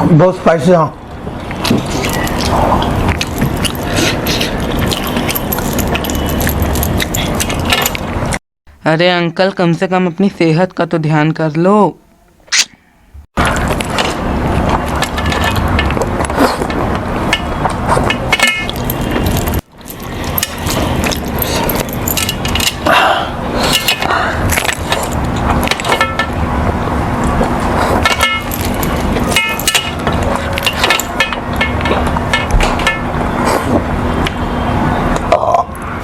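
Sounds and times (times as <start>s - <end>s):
road traffic: 0.0s - 8.9s, 10.5s - 36.0s
man chewing and smacking: 1.4s - 8.2s, 18.7s - 22.3s.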